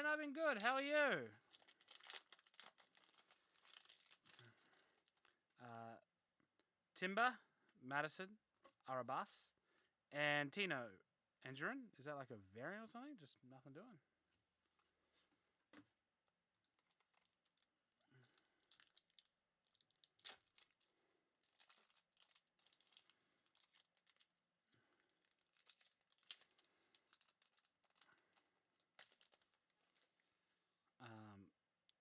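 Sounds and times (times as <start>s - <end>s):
foil wrappers crinkling and tearing: 1.5s - 5.3s, 16.6s - 30.2s.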